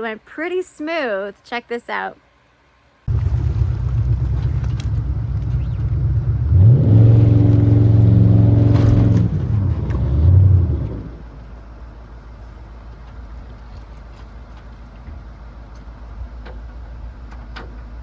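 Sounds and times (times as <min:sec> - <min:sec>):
low background rumble: 0:02.6 - 0:18.0
engine revving: 0:03.1 - 0:11.5.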